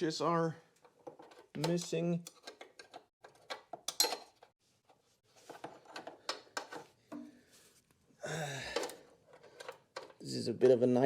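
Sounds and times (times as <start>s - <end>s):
hand tools clicking and tapping: 0.7s - 4.6s, 5.5s - 7.3s, 8.7s - 10.2s
breathy sigh or grunt: 8.2s - 9.0s.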